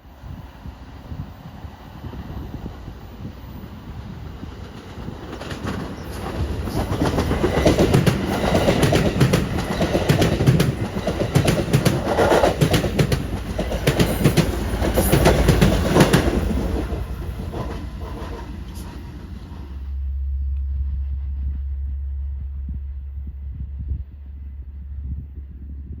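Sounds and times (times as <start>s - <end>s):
train wheels clicking over rail joints: 4.4s - 19.8s
low steady rumble: 19.2s - 26.0s.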